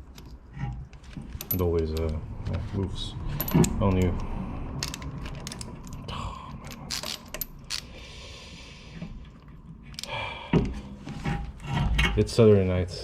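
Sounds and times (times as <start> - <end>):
metal tools clinking: 1.0 - 2.2, 3.3 - 4.2, 4.8 - 7.9.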